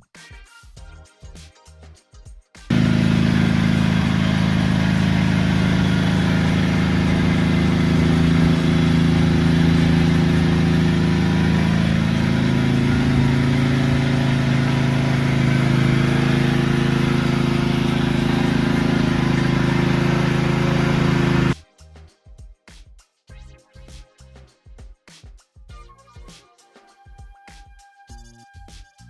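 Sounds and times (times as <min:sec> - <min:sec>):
pressure washer engine running: 0:02.7 - 0:21.6
water jet hissing: 0:02.7 - 0:21.6.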